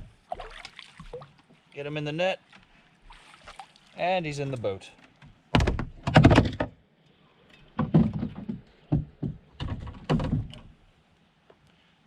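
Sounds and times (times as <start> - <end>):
fish thumping against canoe hull: 5.6 - 6.7, 7.8 - 10.6.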